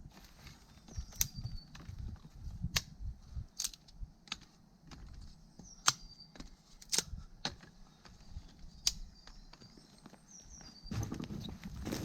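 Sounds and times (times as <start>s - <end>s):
sharp snaps: 5.8s - 6.1s, 6.8s - 7.2s, 8.8s - 9.1s.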